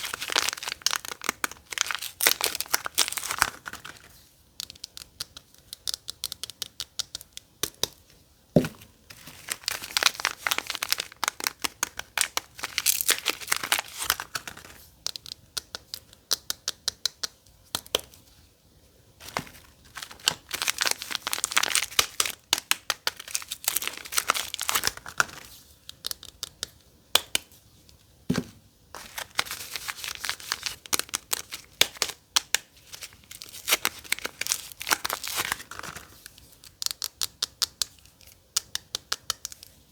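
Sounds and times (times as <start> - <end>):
packaging tearing and crinkling: 0.0 - 4.1, 8.8 - 14.8, 19.2 - 25.5, 29.0 - 36.8.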